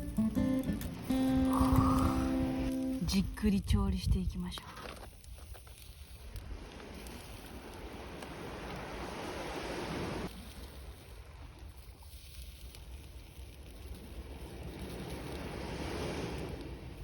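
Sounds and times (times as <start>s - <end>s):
sea waves washing ashore: 0.0s - 3.5s, 4.9s - 17.0s
wind on microphone: 0.9s - 4.4s.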